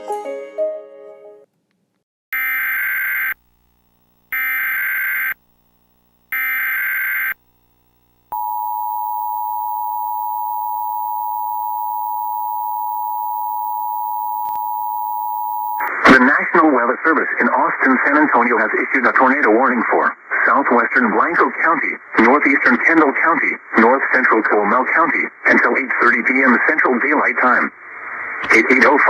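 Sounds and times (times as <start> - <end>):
music: 0.0 - 1.5
data tone bursts: 2.3 - 3.4, 4.3 - 5.4, 6.3 - 7.4, 8.3 - 15.9
two-tone attention signal: 8.3 - 15.9.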